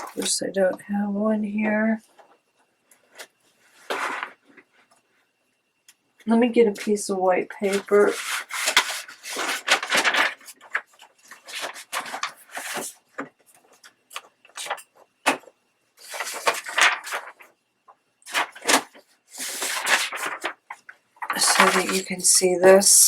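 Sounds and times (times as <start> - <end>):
paper rustling and sliding: 3.0 - 5.0, 7.6 - 17.6, 18.3 - 22.6.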